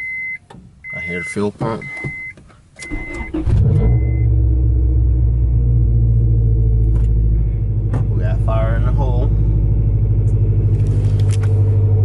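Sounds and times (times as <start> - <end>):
dashboard warning chime: 0.0 - 4.2
car engine starting and idling: 0.0 - 12.0.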